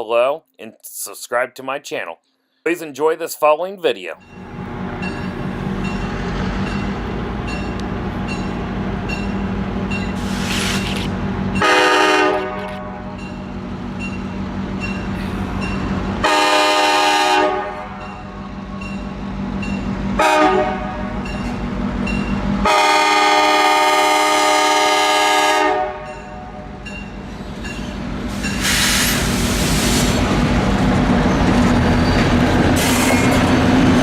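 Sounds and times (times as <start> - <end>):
locomotive engine running: 4.2 - 16.9
train rushing past: 4.2 - 34.0
diesel locomotive horn: 11.6 - 13.3, 16.2 - 18.7, 20.2 - 21.3, 22.6 - 26.8.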